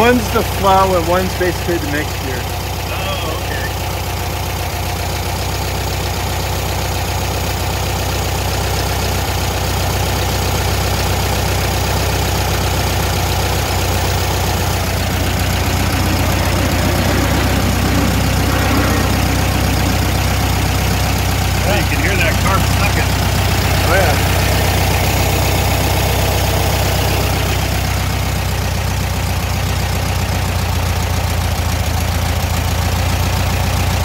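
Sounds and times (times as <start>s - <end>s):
car engine idling: 0.0s - 34.0s
carburettor sucking air: 13.2s - 25.4s.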